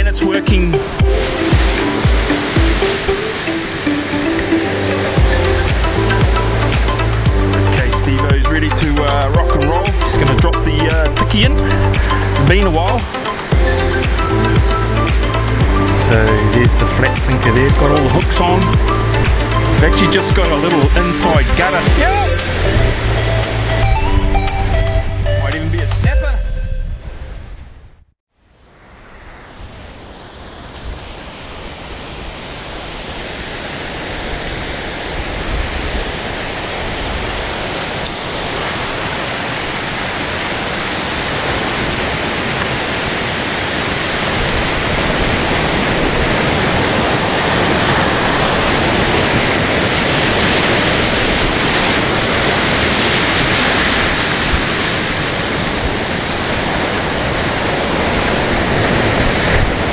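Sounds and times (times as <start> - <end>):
ocean surf breaking: 0.0 - 25.1, 28.5 - 59.9.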